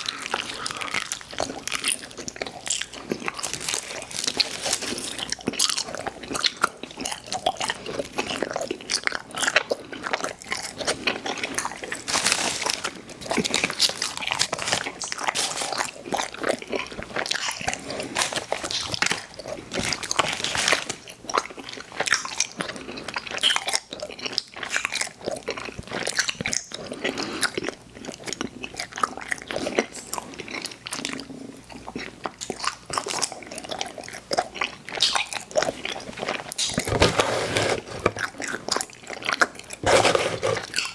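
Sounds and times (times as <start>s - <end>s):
person chewing candy: 0.0s - 37.0s, 37.9s - 40.9s.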